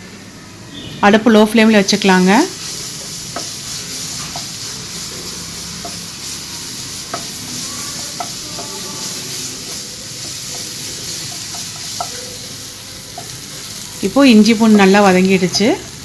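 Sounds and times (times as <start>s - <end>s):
onion sizzling in oil: 1.1s - 16.0s
spoon tapping against pan: 7.0s - 7.4s, 8.0s - 12.2s.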